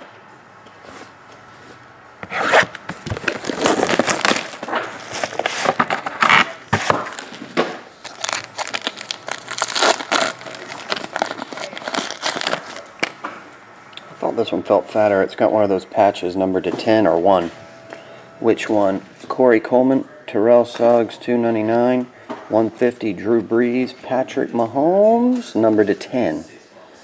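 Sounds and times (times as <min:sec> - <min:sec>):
wrapper torn and crinkled: 0:03.1 - 0:07.4, 0:08.0 - 0:13.2.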